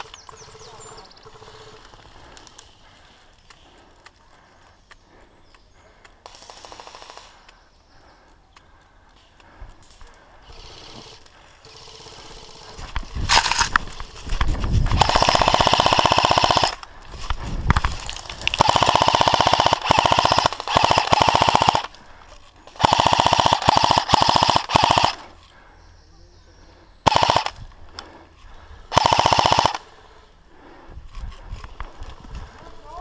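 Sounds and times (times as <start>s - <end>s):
airsoft rifle full-auto bursts: 0.0s - 2.3s, 6.2s - 7.4s, 10.4s - 14.1s, 14.9s - 16.8s, 18.4s - 22.0s, 22.6s - 25.3s, 27.0s - 27.6s, 28.9s - 30.0s.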